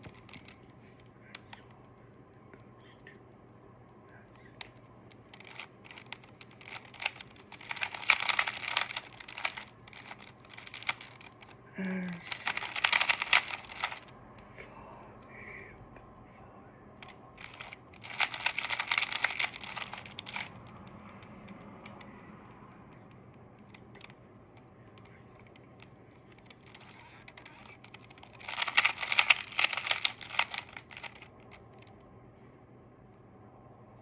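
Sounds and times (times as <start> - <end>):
plastic puzzle cube clicking: 0.0 - 1.8, 4.6 - 14.1, 17.0 - 22.1, 23.7 - 32.0.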